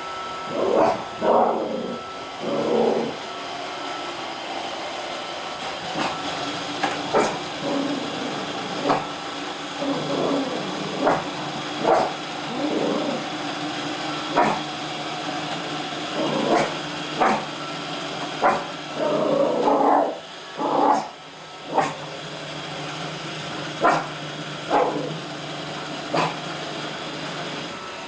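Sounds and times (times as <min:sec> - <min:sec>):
robot vacuum motor hum: 0:00.0 - 0:28.0
dog barking: 0:00.7 - 0:01.5, 0:11.0 - 0:12.1, 0:14.4 - 0:14.6, 0:16.5 - 0:17.5, 0:18.4 - 0:18.7, 0:20.9 - 0:21.1, 0:21.7 - 0:22.0, 0:23.8 - 0:24.1, 0:24.7 - 0:25.2, 0:26.1 - 0:26.4.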